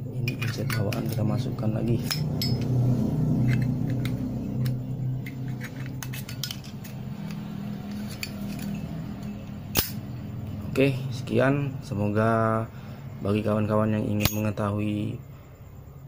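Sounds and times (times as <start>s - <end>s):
steady low hum: 0.0s - 16.0s
metallic clicks and scrapes of lighter: 3.4s - 10.0s.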